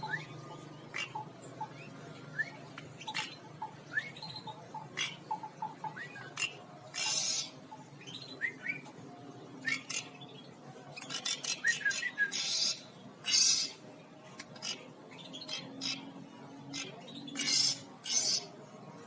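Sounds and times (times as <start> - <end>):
bird chirping: 0.0 - 8.9, 9.6 - 13.8, 14.4 - 18.6
harsh bird squawks: 0.9 - 1.3, 6.4 - 7.6, 16.7 - 18.5.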